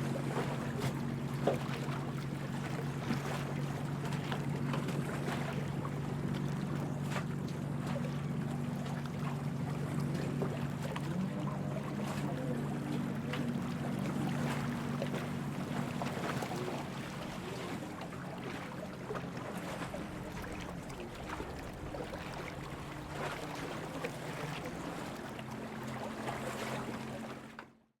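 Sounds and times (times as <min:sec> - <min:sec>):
water lapping and splashing: 0:00.0 - 0:27.9
low hum: 0:07.9 - 0:27.0.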